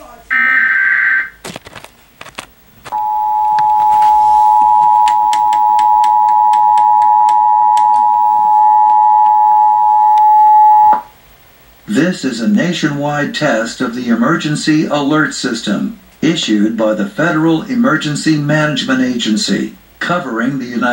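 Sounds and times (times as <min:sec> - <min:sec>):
two-tone alert signal: 0:02.9 - 0:11.0.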